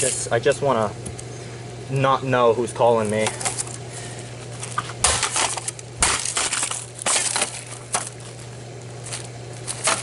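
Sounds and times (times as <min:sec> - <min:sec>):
steady low hum: 0:00.0 - 0:10.0
metal bat smashing a phone: 0:05.0 - 0:07.6.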